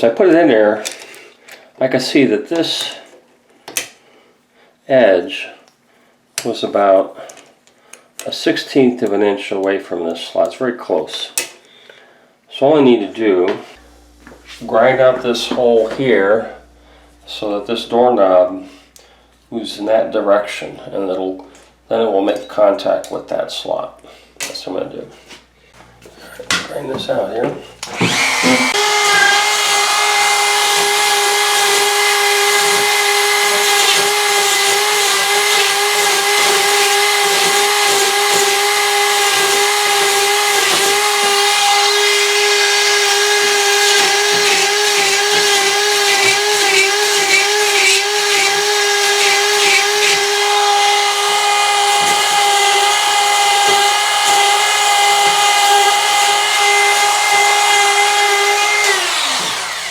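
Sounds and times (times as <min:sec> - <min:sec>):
power tool grinding whine: 0:13.8 - 0:18.4, 0:26.0 - 0:59.9.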